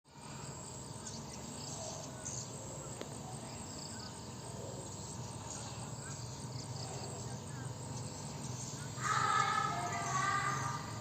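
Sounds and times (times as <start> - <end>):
birds twittering: 0.1 - 11.0
steady low hum: 0.1 - 11.0.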